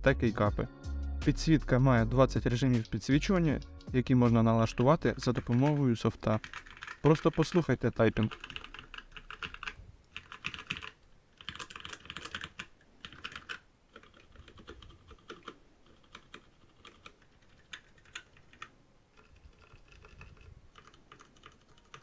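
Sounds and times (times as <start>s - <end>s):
mechanical keyboard typing: 4.6s - 22.0s.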